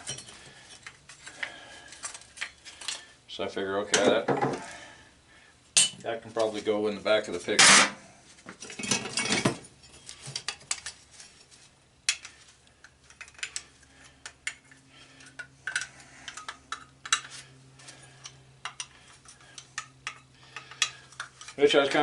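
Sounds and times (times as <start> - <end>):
scrap metal clinking and rattling: 0.0 - 3.1, 7.5 - 22.0.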